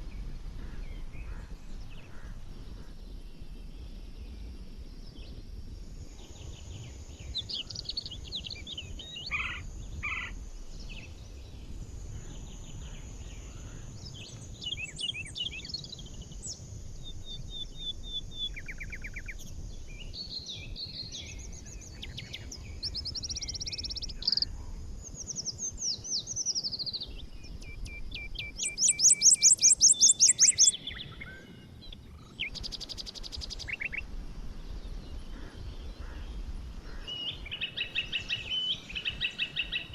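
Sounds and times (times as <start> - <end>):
low steady rumble: 0.0 - 14.6
songbirds singing and chirping: 0.0 - 39.9
fast bright bird trill: 25.4 - 31.2.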